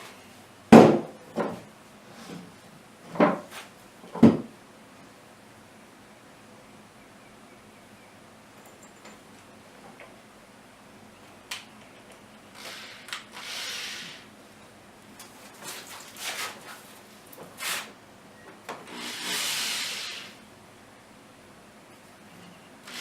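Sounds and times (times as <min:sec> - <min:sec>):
wood knocking: 0:04.2 - 0:04.5
hand tool scraping wood: 0:15.3 - 0:18.0.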